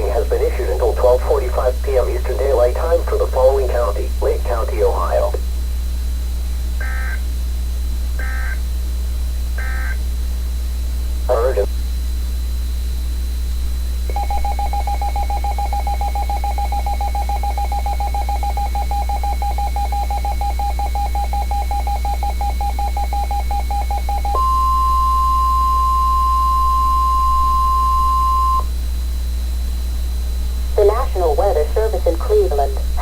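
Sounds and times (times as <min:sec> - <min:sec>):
constant low hum: 0:00.0 - 0:33.0
rapidly pulsing electronic beep: 0:06.8 - 0:07.3, 0:08.2 - 0:08.6, 0:09.6 - 0:10.0, 0:14.1 - 0:28.7
steady warning alarm tone: 0:06.8 - 0:10.1, 0:14.0 - 0:33.0.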